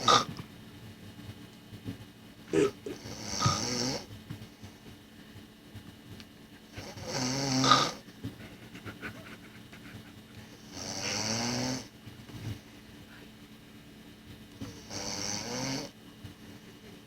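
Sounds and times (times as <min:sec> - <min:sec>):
person snoring: 0:00.0 - 0:00.3, 0:02.5 - 0:04.1, 0:06.8 - 0:08.0, 0:10.7 - 0:11.9, 0:14.8 - 0:15.9.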